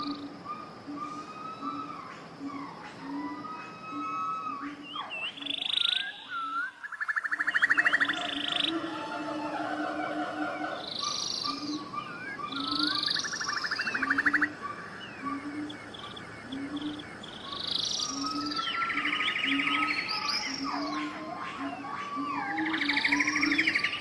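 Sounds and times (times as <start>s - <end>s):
birds chirping and trilling: 0.0s - 24.0s.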